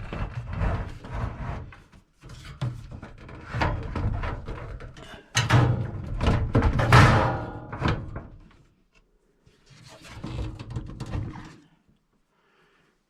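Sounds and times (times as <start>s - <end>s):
microwave oven knocking and thunking: 5.4s - 8.1s.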